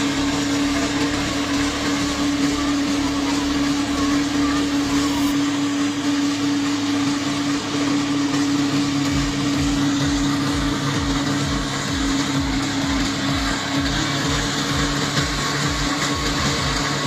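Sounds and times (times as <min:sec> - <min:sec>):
brick-making machine running: 0:00.0 - 0:17.0.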